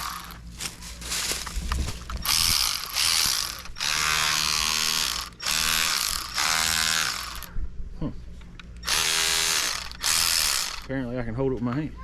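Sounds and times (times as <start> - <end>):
cordless power ratchet whirring: 0.0 - 0.4, 2.2 - 7.5, 8.8 - 10.9.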